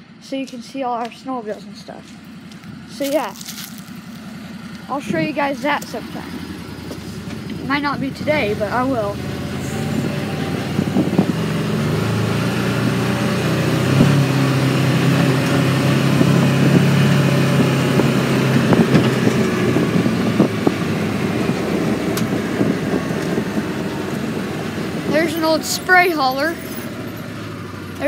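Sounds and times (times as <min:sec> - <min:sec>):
vehicle engine running: 0:00.0 - 0:28.0.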